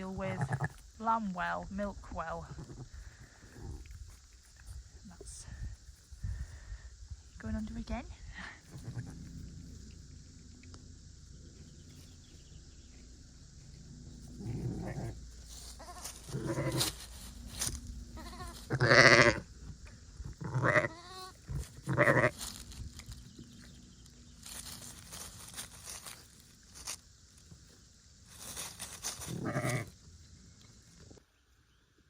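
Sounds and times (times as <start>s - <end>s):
sheep bleating: 15.8s - 16.9s, 18.1s - 19.4s, 20.4s - 22.4s, 29.4s - 29.9s.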